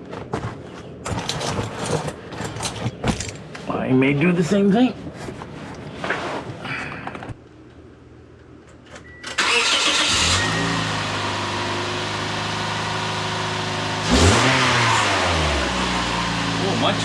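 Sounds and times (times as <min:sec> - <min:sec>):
car engine starting and idling: 0:09.2 - 0:17.0
engine revving: 0:09.4 - 0:17.0.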